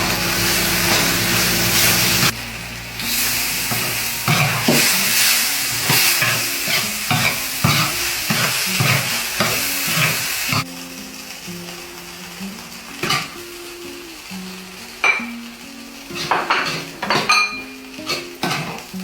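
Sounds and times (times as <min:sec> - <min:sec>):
food sizzling in a pan: 0:00.0 - 0:19.0
spatula scraping and knocking pan: 0:03.0 - 0:10.6, 0:16.1 - 0:18.8.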